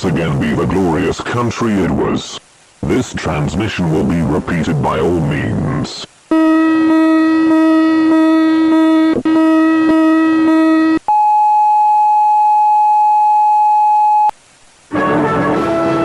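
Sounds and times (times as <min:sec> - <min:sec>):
steady high-pitched sine tone: 0:06.3 - 0:14.4
music: 0:14.9 - 0:16.0.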